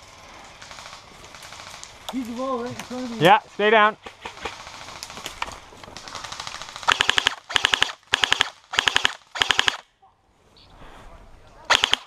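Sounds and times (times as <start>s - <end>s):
airsoft gun full-auto bursts: 0.6s - 3.4s, 4.2s - 5.4s, 6.0s - 9.8s, 11.7s - 12.0s.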